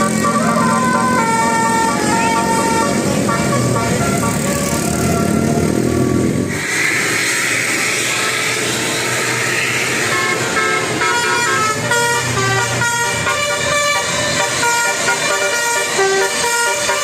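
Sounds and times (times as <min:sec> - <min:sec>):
multi-tone musical bus horn: 0:00.0 - 0:06.4, 0:09.6 - 0:17.0
hissing noise: 0:06.2 - 0:10.2.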